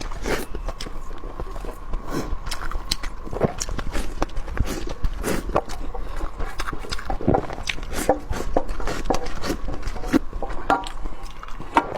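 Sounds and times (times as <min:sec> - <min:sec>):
person chewing: 0:00.0 - 0:11.9.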